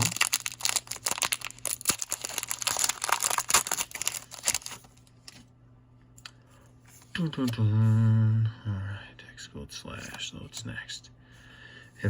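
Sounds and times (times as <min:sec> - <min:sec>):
foil wrapper tearing and crinkling: 0:00.0 - 0:05.4.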